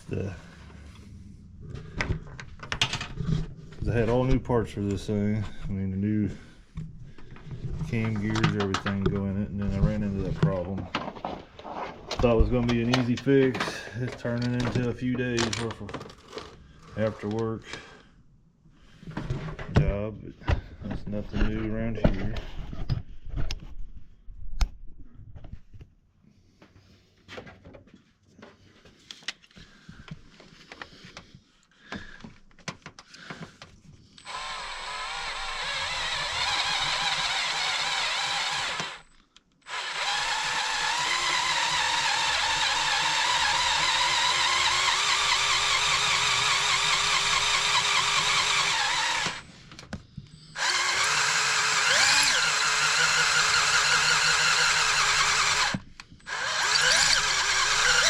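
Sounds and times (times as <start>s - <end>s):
power drill drilling metal: 34.2s - 49.6s, 50.4s - 58.0s.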